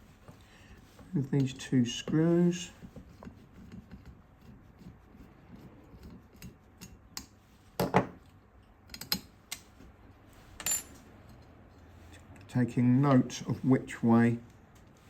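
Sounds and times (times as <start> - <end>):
metal parts and tool clicking: 6.0 - 9.7.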